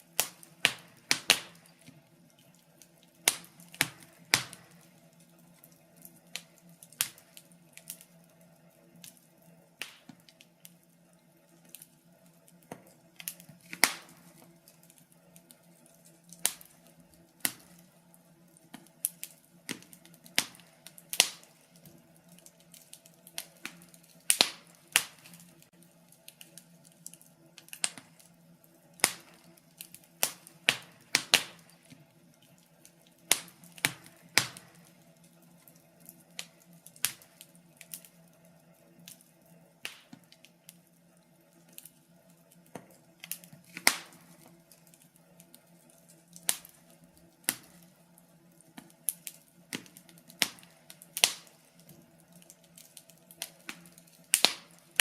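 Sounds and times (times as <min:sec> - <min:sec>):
faint steady hum: 0:00.0 - 0:55.0
wood fire crackling: 0:00.0 - 0:55.0.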